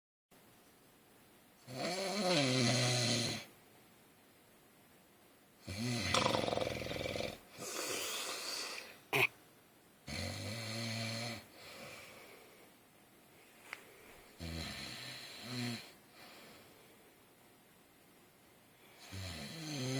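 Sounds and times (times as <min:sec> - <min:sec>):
man snoring heavily: 0:01.7 - 0:03.5, 0:05.6 - 0:08.4, 0:10.1 - 0:11.5, 0:14.4 - 0:16.0, 0:19.0 - 0:19.9.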